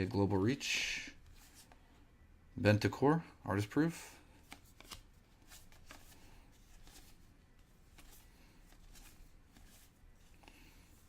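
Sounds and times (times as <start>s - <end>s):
trading cards flicking and sliding: 4.4s - 11.0s.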